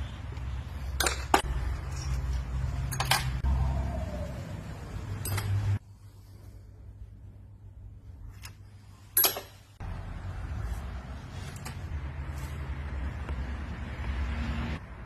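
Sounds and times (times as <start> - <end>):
metallic clinks and knocks: 5.2 - 5.8.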